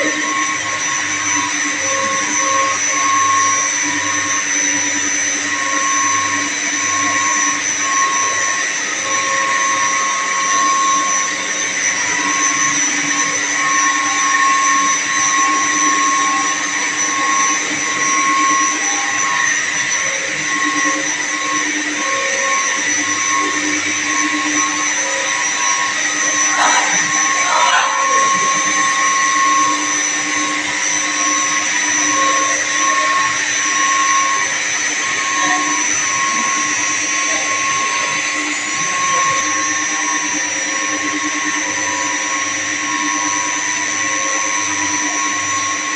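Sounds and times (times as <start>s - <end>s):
high steady whining tones: 0.0s - 45.9s
water pumps humming: 24.2s - 31.8s.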